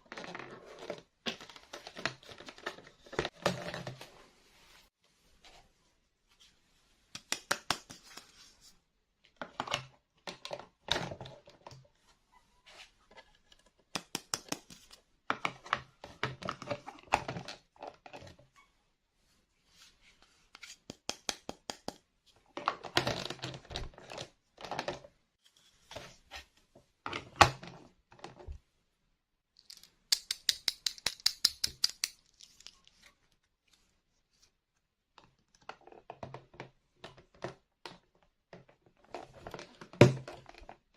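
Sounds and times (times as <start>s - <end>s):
plastic toy pieces clicking: 29.6s - 32.8s.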